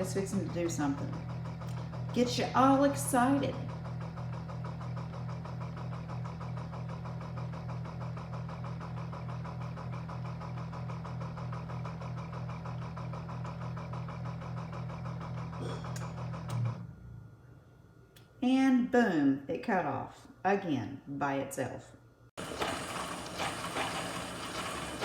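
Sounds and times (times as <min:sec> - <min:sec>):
coffee maker buzzing hum: 0:00.0 - 0:17.2, 0:22.4 - 0:25.0.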